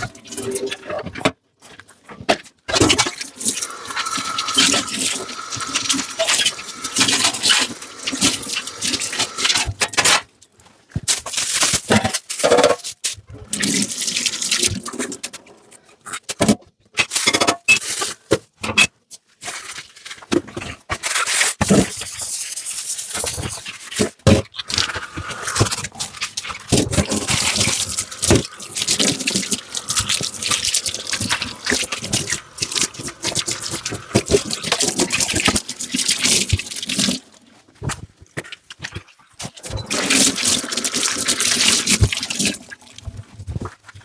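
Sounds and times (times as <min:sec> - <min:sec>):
dish scrubbing: 0:02.8 - 0:09.8, 0:24.6 - 0:37.4, 0:38.8 - 0:43.2
water running: 0:03.0 - 0:09.7, 0:24.6 - 0:37.4, 0:39.7 - 0:43.1.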